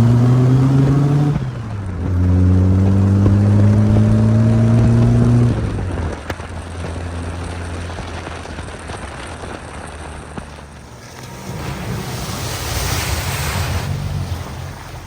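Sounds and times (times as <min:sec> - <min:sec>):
car engine revving: 0:00.0 - 0:15.0
water spray and splashing: 0:07.0 - 0:15.0.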